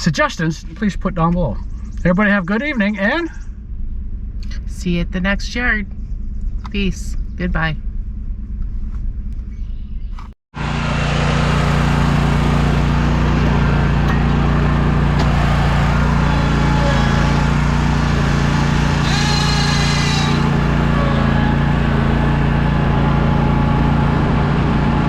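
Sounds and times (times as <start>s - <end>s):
small gasoline engine running: 10.6s - 25.0s.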